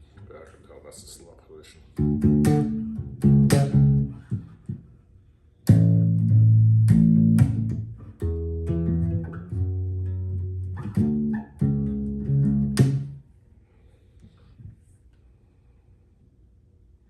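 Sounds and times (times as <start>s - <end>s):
electric bass notes: 1.9s - 4.9s, 5.6s - 13.3s.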